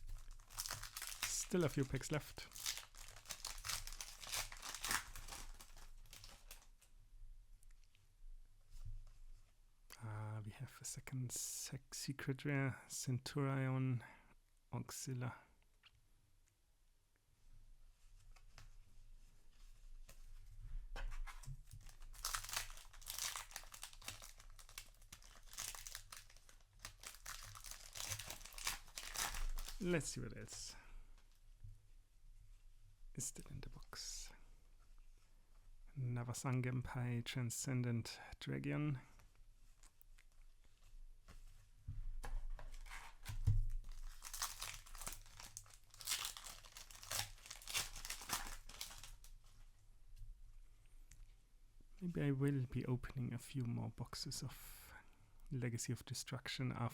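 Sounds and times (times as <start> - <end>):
foil wrapper crinkling and tearing: 0.0 - 6.8, 21.7 - 30.1, 42.7 - 49.4.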